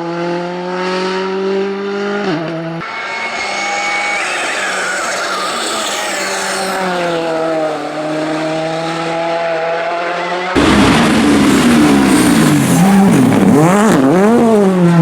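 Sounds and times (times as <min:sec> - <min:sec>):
rally car engine running hard: 0:00.0 - 0:15.0
tyre noise and squeal: 0:02.8 - 0:08.2, 0:11.5 - 0:14.0.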